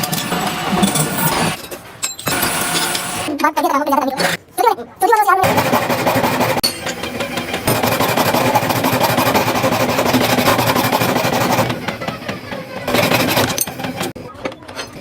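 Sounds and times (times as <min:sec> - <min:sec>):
workshop machinery clattering: 0:00.0 - 0:03.3, 0:05.4 - 0:15.0.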